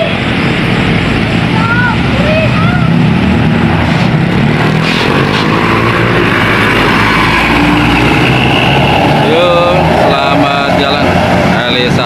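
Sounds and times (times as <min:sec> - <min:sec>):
bus diesel engine passing: 0:00.0 - 0:12.0
road noise: 0:00.0 - 0:12.0.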